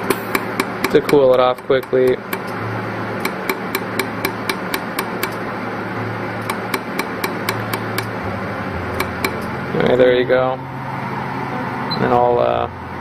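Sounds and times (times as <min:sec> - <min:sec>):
laser welder sharp clicks: 0:00.0 - 0:02.6, 0:03.2 - 0:05.4, 0:06.4 - 0:08.2
steady hum and hiss: 0:00.0 - 0:13.0.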